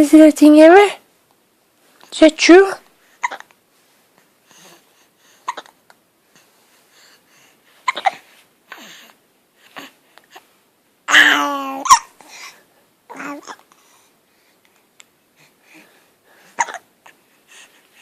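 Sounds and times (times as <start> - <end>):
baby hiccuping: 3.2 - 3.5, 5.4 - 5.8, 7.8 - 8.2, 11.1 - 12.2, 13.1 - 13.7, 16.6 - 16.9
baby voiced sound: 11.1 - 12.2, 13.1 - 13.6.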